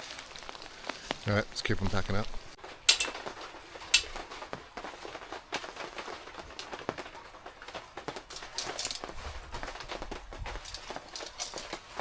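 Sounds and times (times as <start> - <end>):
camping gear knocking and rustling: 2.6 - 12.0.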